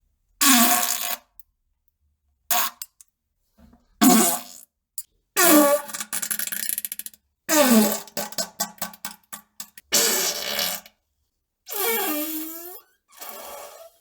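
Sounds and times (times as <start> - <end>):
farts: 9.9 - 10.9, 11.7 - 14.0.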